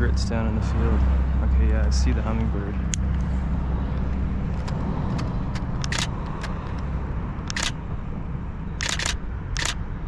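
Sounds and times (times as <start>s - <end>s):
camera shutter clicks: 5.6s - 6.6s, 7.5s - 7.8s, 8.8s - 9.8s.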